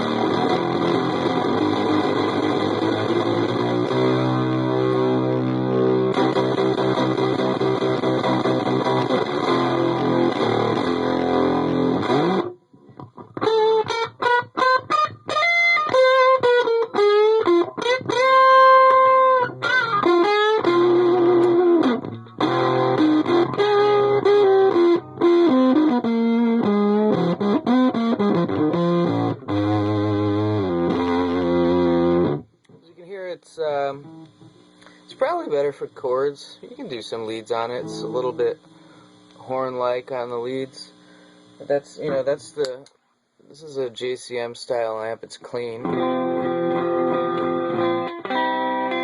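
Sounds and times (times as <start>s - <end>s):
fuzz electric guitar chords: 0.0s - 32.6s, 33.6s - 42.9s, 45.6s - 49.0s
electric guitar lead lines: 0.0s - 42.9s, 43.5s - 49.0s.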